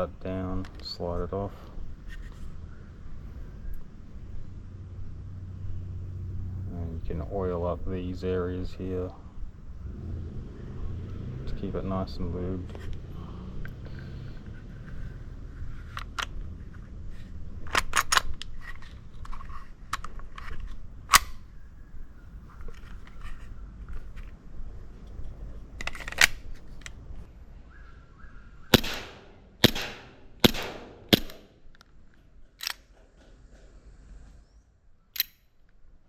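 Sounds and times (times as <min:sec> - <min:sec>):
metal parts clicking: 0:17.7 - 0:21.4, 0:25.8 - 0:27.0, 0:32.6 - 0:32.9, 0:35.2 - 0:35.5.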